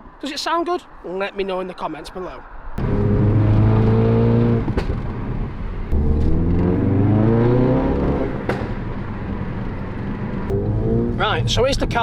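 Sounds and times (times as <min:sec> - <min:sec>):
car engine accelerating: 0:02.8 - 0:12.0.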